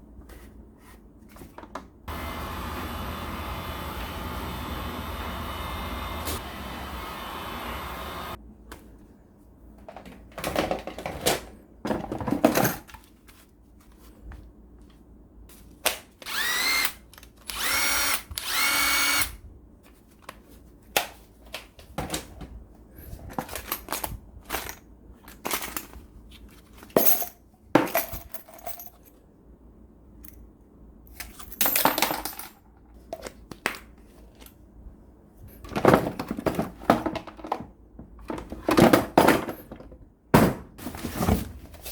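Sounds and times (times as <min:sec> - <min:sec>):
power drill motor whining: 0:02.1 - 0:08.4, 0:16.2 - 0:19.4.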